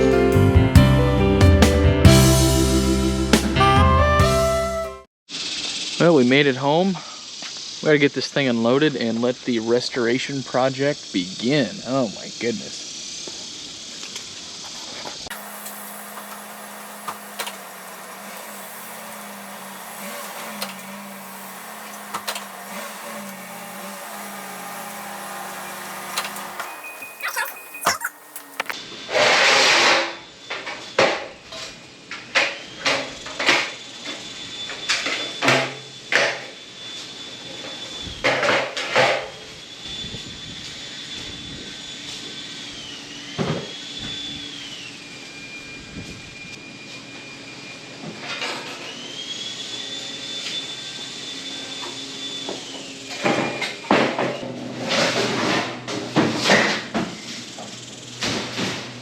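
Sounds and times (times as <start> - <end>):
high whine: 15.3 - 28.8.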